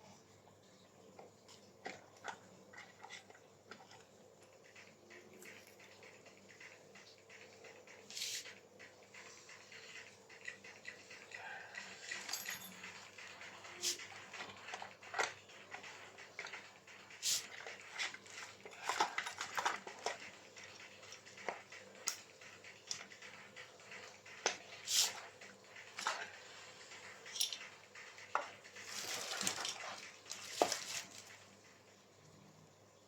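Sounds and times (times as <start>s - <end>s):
metal parts clinking on bench: 12.1s - 13.0s.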